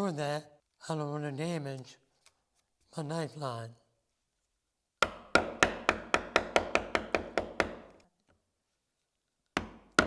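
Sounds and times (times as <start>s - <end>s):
mallet striking chisel: 5.0s - 8.0s, 9.6s - 10.0s.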